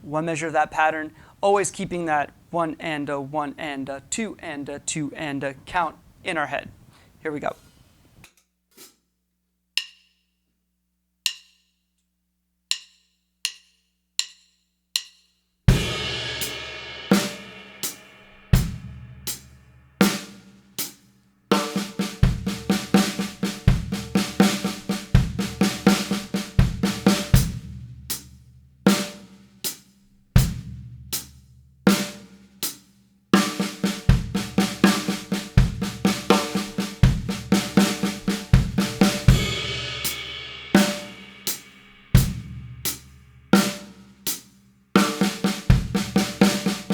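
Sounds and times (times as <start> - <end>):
drum kit groove and fills: 15.0 - 46.9.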